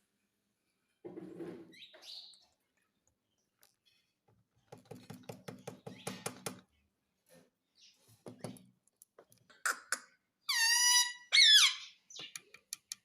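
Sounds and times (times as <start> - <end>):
parrot calling and squawking: 9.7 - 12.1.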